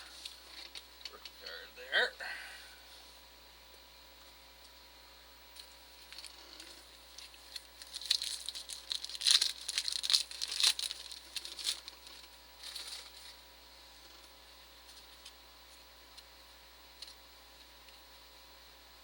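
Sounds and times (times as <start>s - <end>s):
foil wrapper crinkling: 5.6s - 13.4s.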